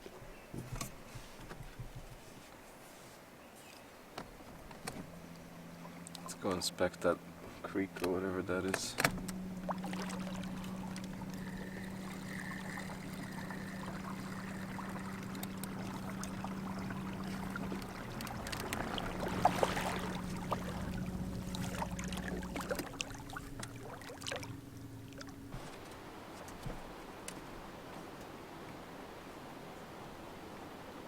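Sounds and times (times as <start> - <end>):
water around a hull: 0.0 - 31.0
electric motor humming: 9.0 - 25.5.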